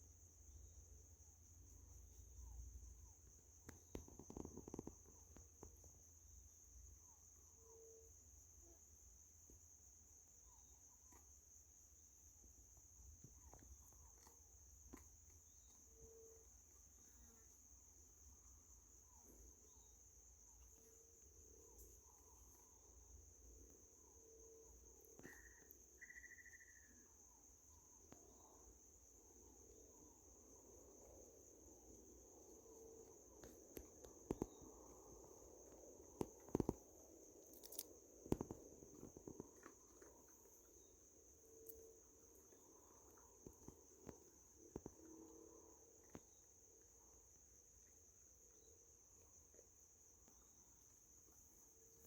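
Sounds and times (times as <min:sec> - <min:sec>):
crickets chirring: 0:00.0 - 0:52.0
whistled calls: 0:26.0 - 0:27.0
soft clicks and rustles: 0:35.7 - 0:40.5.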